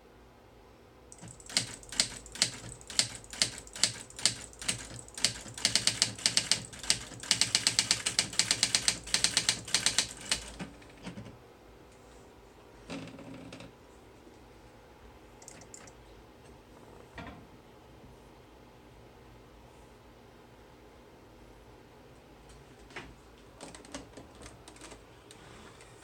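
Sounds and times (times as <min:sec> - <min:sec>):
typewriter keys typing: 0:01.1 - 0:11.2, 0:15.4 - 0:15.9, 0:23.8 - 0:25.0
soft mechanical sound: 0:01.1 - 0:12.2, 0:15.4 - 0:17.4.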